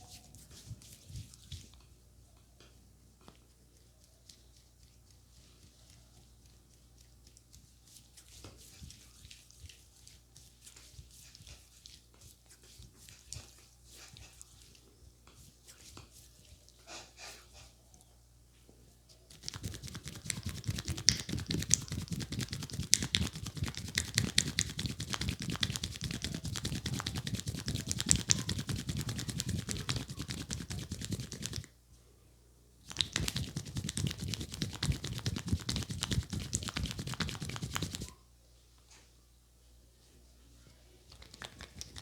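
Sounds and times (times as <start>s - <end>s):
fast tapping and rubbing on scalp: 4.0s - 14.4s, 19.3s - 31.7s, 32.9s - 38.2s, 41.1s - 42.0s.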